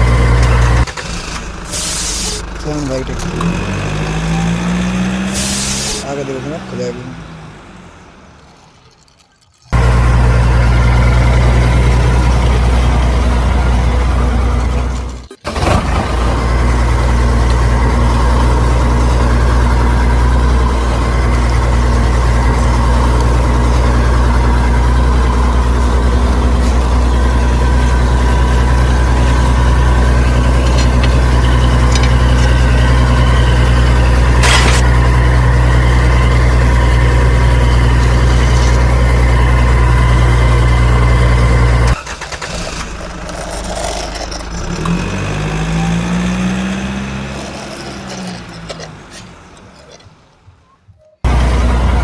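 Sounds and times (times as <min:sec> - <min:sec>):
mixed noises: 0:08.3 - 0:10.4
rising whine: 0:09.7 - 0:42.0.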